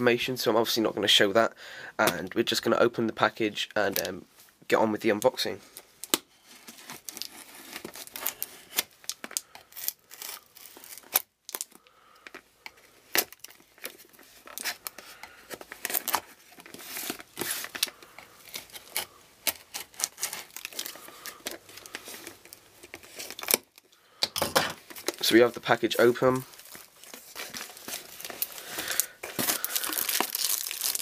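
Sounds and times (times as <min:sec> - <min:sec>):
package ripping and crinkling: 0:06.0 - 0:12.4, 0:13.1 - 0:23.9, 0:24.6 - 0:31.0.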